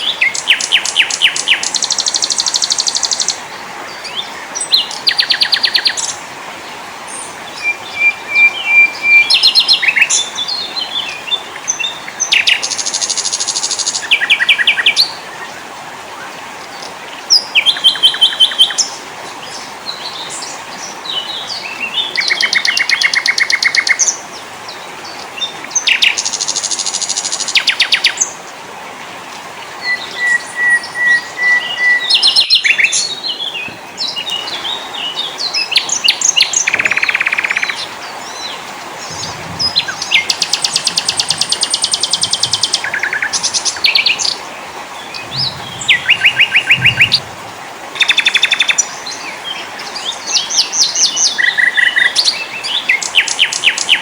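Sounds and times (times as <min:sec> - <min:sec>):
songbirds trilling and chirping: 0:00.0 - 0:28.6, 0:29.6 - 0:54.0.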